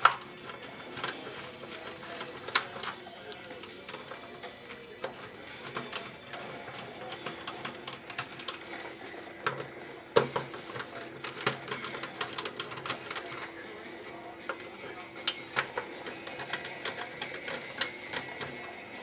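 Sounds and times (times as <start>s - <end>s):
screwdriver clicking on plastic case: 5.0s - 8.6s, 9.4s - 13.6s, 14.5s - 18.6s.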